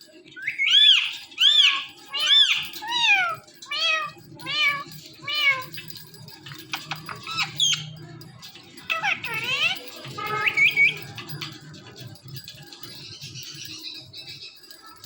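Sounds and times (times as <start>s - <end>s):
parrot chirp: 0.3s - 5.6s, 6.7s - 8.0s, 8.9s - 11.2s.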